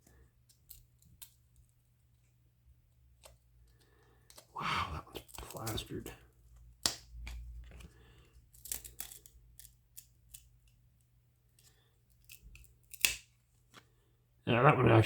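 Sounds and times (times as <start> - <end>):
card snaps and paper crackles: 3.2 - 7.9, 12.2 - 13.8.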